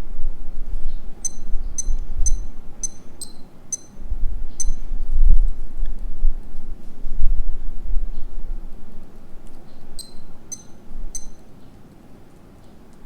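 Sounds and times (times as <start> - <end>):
digital watch beeping: 1.2 - 4.0, 10.0 - 11.4.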